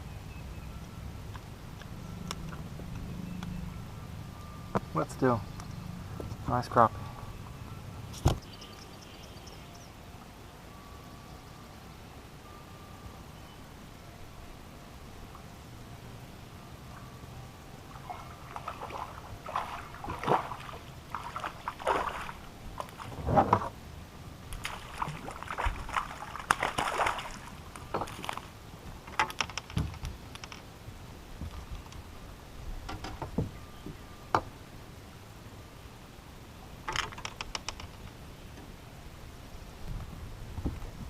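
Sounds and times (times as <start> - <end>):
water splashing and sloshing: 16.8 - 34.6.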